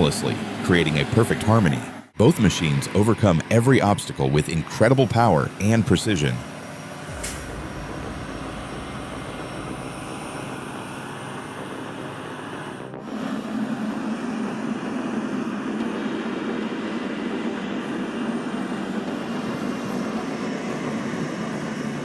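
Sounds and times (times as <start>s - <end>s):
truck engines droning: 0.0s - 13.3s
deep engine hum: 6.4s - 13.3s.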